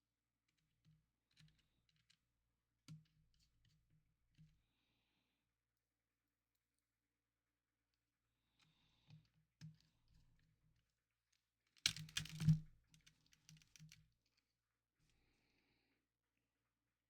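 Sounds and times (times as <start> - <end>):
plastic parts clicking: 11.8 - 14.0.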